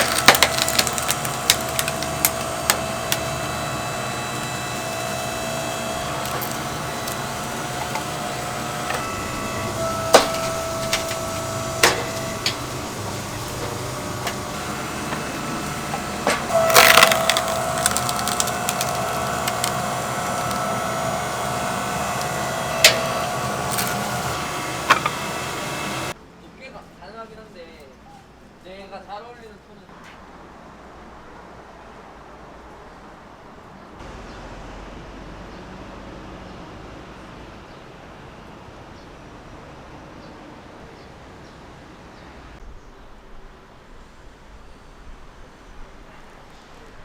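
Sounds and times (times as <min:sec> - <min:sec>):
fire hissing: 0:00.0 - 0:26.2
firewood crackling and popping: 0:00.0 - 0:26.2.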